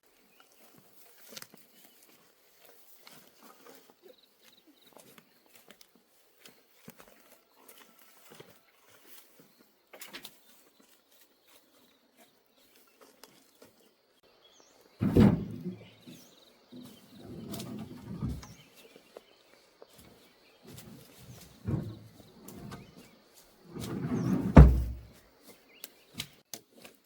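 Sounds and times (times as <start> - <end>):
heavy thud: 15.0 - 15.9, 23.7 - 25.1
low rumbling knock and scrape: 15.0 - 15.9, 17.2 - 18.6, 20.8 - 22.9, 23.7 - 25.1.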